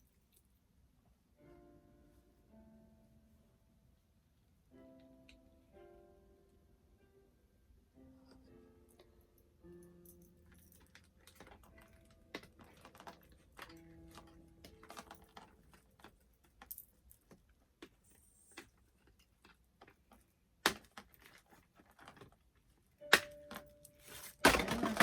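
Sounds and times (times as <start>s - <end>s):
faint background music: 0.0s - 25.0s
plastic accessories clicking: 10.2s - 25.0s.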